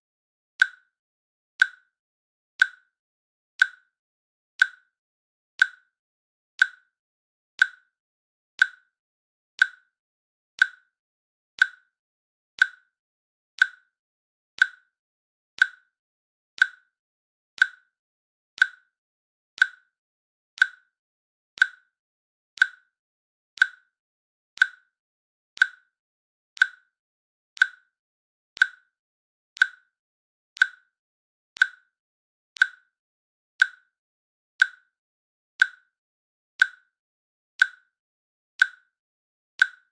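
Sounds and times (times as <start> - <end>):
timer ticking: 0.6 - 0.9, 1.6 - 1.9, 2.6 - 2.9, 3.6 - 3.9, 4.6 - 4.9, 5.6 - 5.9, 6.6 - 6.9, 7.6 - 8.0, 8.6 - 9.0, 9.6 - 9.9, 10.6 - 10.9, 11.6 - 12.0, 12.6 - 13.0, 13.6 - 14.0, 14.6 - 15.0, 15.6 - 16.0, 16.6 - 17.0, 17.6 - 18.0, 18.6 - 19.0, 19.6 - 20.0, 20.6 - 21.0, 21.6 - 22.0, 22.6 - 23.0, 23.6 - 24.0, 24.6 - 25.0, 25.6 - 26.0, 26.6 - 27.0, 27.6 - 28.0, 28.6 - 29.0, 29.6 - 30.0, 30.6 - 31.0, 31.6 - 32.0, 32.6 - 33.0, 33.6 - 34.0, 34.6 - 34.9, 35.6 - 35.9, 36.6 - 36.9, 37.6 - 37.9, 38.6 - 38.9, 39.6 - 39.9.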